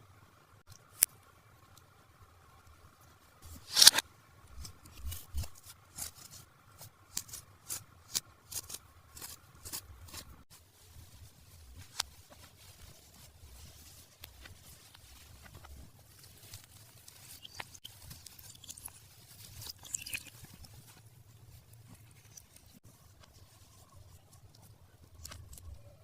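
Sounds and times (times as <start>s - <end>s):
plastic and cardboard clicks and scrapes: 3.4s - 10.4s.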